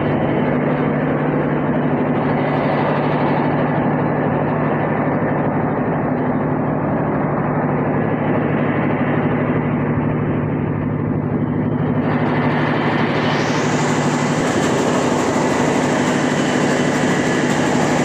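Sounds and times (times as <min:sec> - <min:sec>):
engine hum: 0:00.0 - 0:18.0
rice mill rushing noise: 0:09.7 - 0:18.0.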